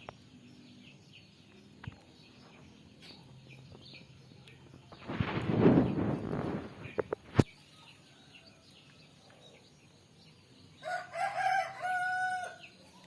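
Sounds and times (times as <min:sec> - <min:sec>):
faint small-bird chirps: 0:05.8 - 0:13.0
rooster crowing: 0:10.8 - 0:12.7.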